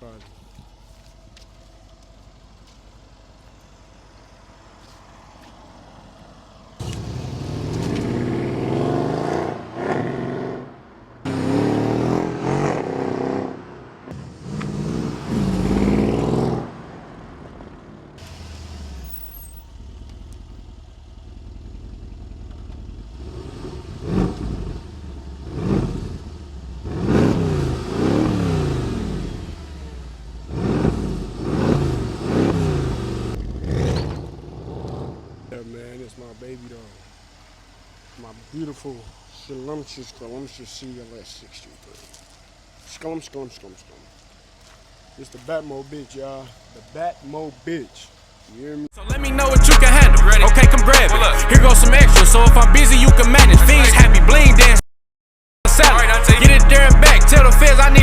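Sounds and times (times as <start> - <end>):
car engine revving and idling: 0.0 - 54.8, 55.6 - 58.0.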